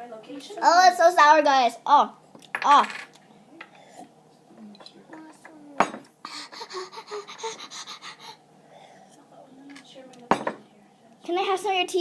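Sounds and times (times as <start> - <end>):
dishes and cutlery clinking: 4.7 - 6.1, 9.7 - 10.6.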